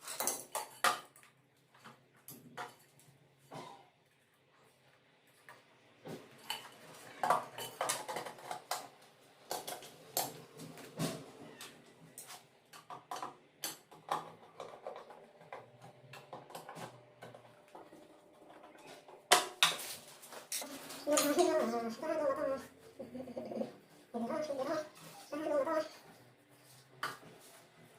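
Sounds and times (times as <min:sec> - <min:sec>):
small hard objects clinking and knocking: 0:06.4 - 0:10.5.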